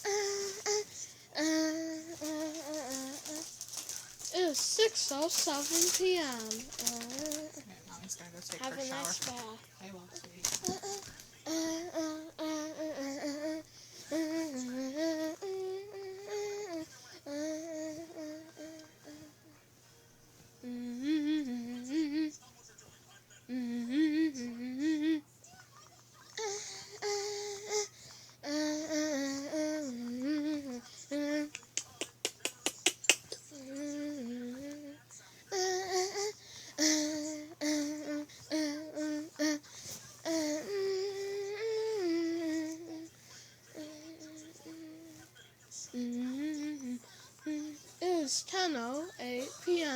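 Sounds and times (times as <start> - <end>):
person humming a tune: 0.0 - 7.6, 10.5 - 19.6, 20.6 - 22.3, 23.5 - 25.2, 26.4 - 31.8, 33.4 - 39.6, 40.2 - 43.1, 43.8 - 45.2, 45.9 - 48.2.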